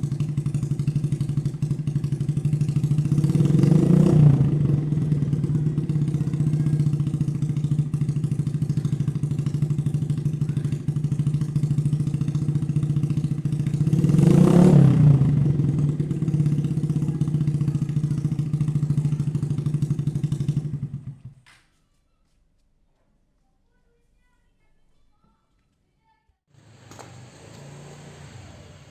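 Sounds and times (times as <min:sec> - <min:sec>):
motorcycle engine idling: 0:00.0 - 0:21.4, 0:26.6 - 0:28.9
engine revving: 0:02.2 - 0:07.4, 0:12.7 - 0:18.9, 0:26.6 - 0:28.9.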